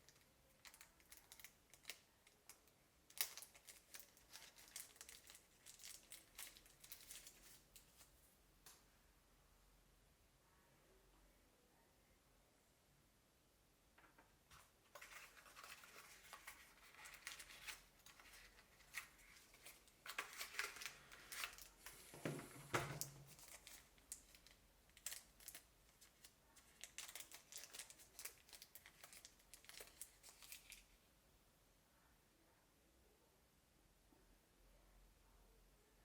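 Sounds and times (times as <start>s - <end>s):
packaging rustling: 3.1s - 8.1s, 14.6s - 30.8s.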